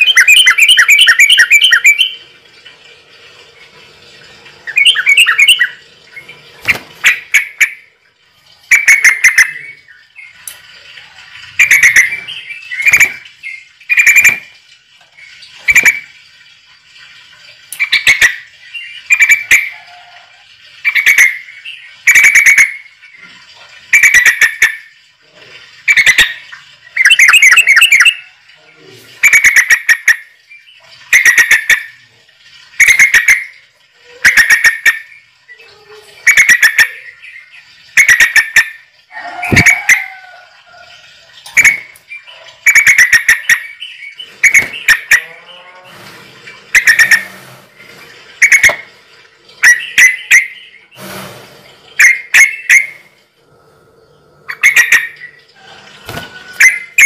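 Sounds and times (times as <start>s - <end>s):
bird's buzzy calls: 11.5s - 14.6s, 15.5s - 16.1s, 36.2s - 40.5s, 41.5s - 48.9s, 54.4s - 57.0s.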